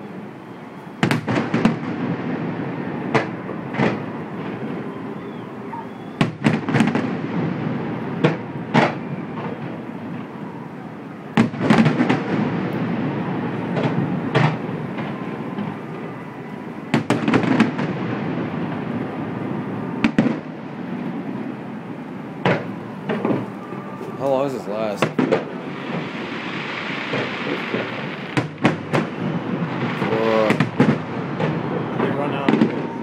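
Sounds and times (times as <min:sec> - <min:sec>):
firework shells bursting: 0:25.0 - 0:33.0.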